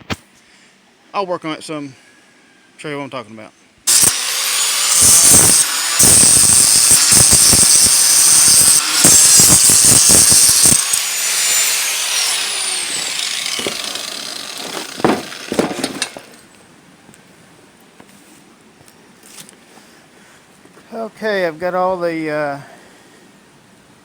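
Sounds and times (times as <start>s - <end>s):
angle grinder cutting metal: 3.9s - 16.4s
sharp knocks: 14.6s - 16.4s.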